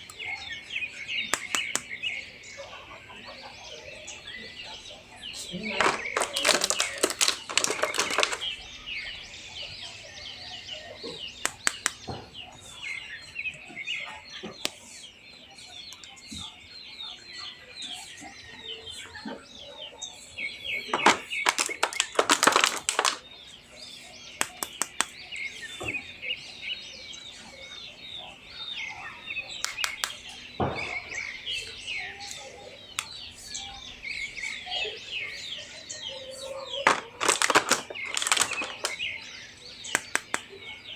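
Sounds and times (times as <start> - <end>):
small birds chirping: 0.0 - 40.9
sharp clicks: 1.2 - 2.0, 11.4 - 12.1, 24.4 - 25.2, 29.6 - 30.2, 39.9 - 40.5.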